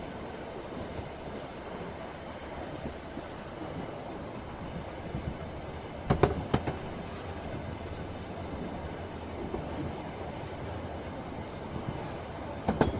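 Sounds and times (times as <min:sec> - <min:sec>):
train wheels rumbling on rails: 0:00.0 - 0:12.9
wheels knocking over rail joint: 0:12.6 - 0:12.9.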